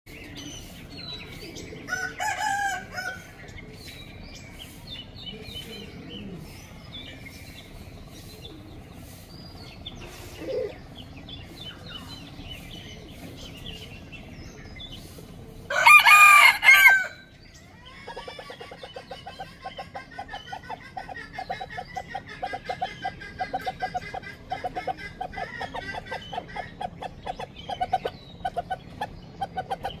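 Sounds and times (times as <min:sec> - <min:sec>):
chickens calling: 0:00.1 - 0:30.0
chickens clucking rapidly: 0:00.1 - 0:30.0
rooster crowing: 0:01.9 - 0:03.3, 0:15.7 - 0:17.3.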